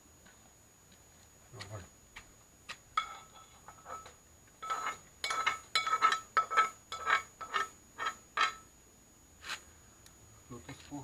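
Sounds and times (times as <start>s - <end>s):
bowl clinking: 3.0s - 8.6s.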